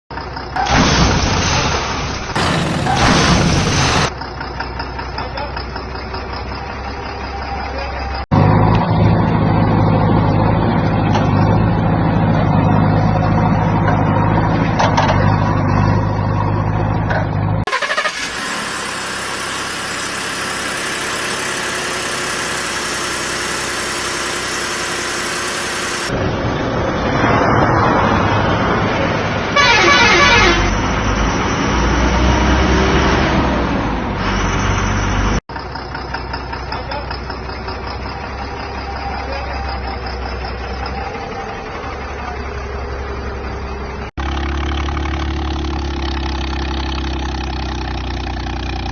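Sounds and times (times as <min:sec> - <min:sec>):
heavy vehicles running: 0:00.1 - 0:48.9
vehicle horn: 0:29.6 - 0:30.8.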